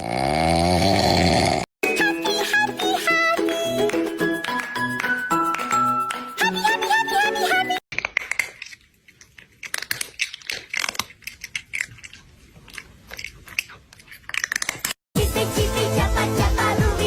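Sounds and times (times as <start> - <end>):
music: 1.8 - 7.8, 15.2 - 17.0
crunchy chewing: 7.9 - 15.0.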